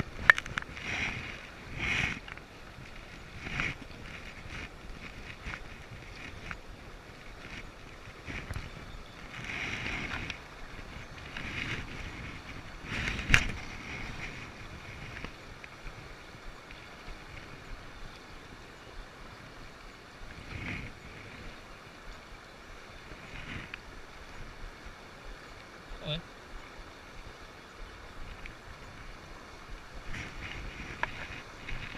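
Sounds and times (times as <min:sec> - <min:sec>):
river water running: 0:00.0 - 0:31.9
wind buffeting microphone: 0:00.0 - 0:31.9.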